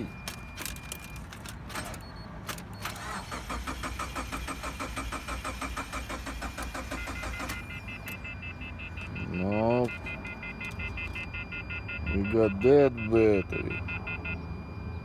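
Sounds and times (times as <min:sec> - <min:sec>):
engine cranking without starting: 0:00.2 - 0:07.6.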